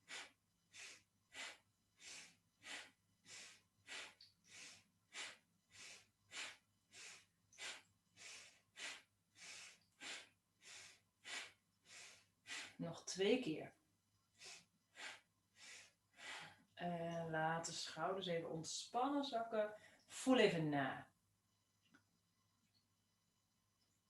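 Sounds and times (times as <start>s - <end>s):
person breathing rhythmically: 0.0s - 12.8s, 14.3s - 16.7s.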